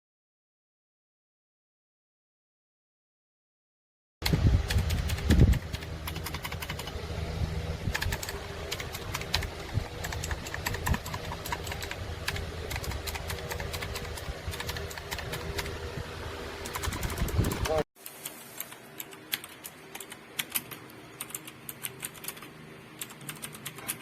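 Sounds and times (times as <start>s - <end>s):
low steady hum: 4.2s - 17.8s.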